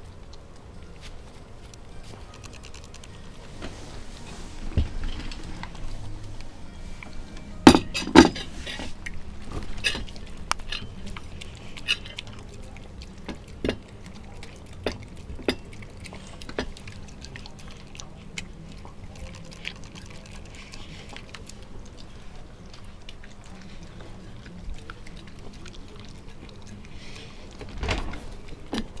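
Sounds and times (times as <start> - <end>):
plate clinking and knocking: 7.6 - 8.9
dog licking a plate: 8.3 - 29.0.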